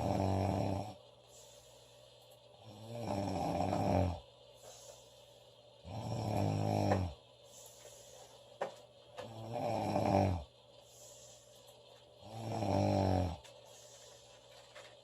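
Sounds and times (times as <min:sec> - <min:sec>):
woman snoring: 0:00.0 - 0:01.0, 0:02.6 - 0:04.2, 0:05.8 - 0:07.2, 0:09.2 - 0:10.5, 0:12.2 - 0:13.5.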